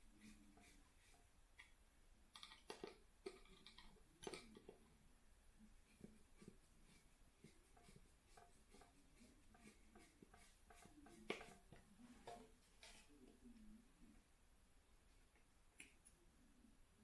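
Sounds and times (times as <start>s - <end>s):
small parts clicking and tapping: 1.6s - 4.8s.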